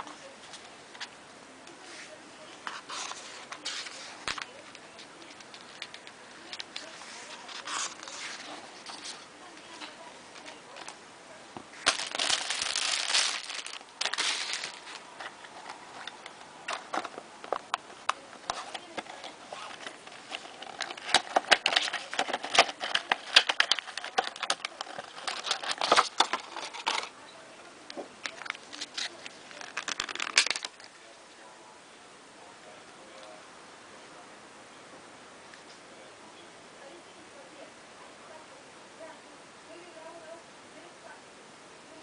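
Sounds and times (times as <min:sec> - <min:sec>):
packaging crinkling: 0:11.7 - 0:17.8, 0:18.4 - 0:27.1, 0:28.2 - 0:31.0.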